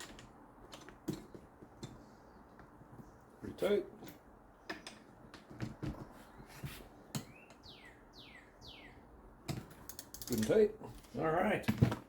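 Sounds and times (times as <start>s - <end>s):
bird chirping: 6.0s - 9.3s.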